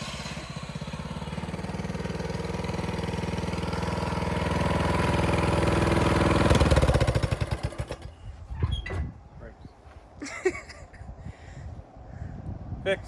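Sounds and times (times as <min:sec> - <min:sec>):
riding lawn mower engine running: 0:00.0 - 0:08.4.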